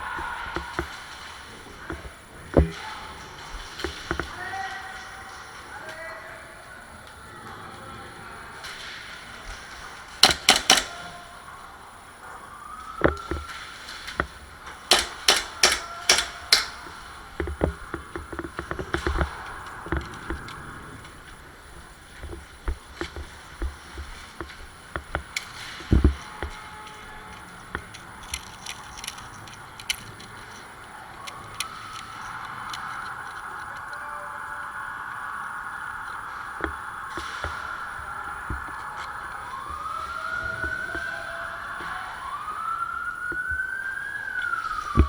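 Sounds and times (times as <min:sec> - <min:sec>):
airsoft gun sharp cracks: 0:10.2 - 0:11.1, 0:14.8 - 0:17.0.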